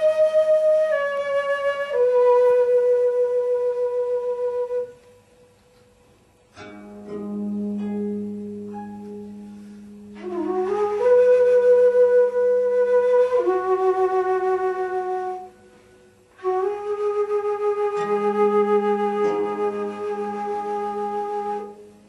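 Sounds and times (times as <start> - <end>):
slow melody with vibrato: 0.0 - 22.0.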